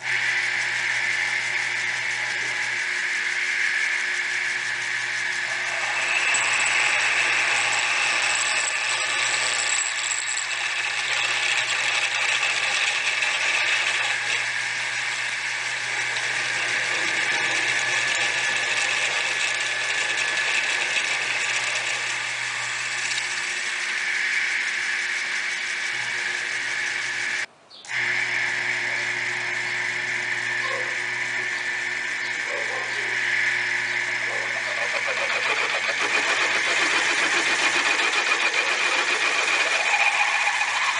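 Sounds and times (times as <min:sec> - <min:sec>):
milling machine motor hum: 0:00.0 - 0:40.9.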